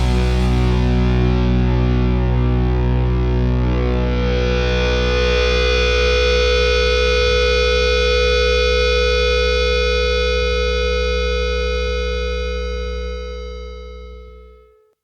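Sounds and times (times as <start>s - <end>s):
distorted guitar and bass chord: 0.0s - 14.8s.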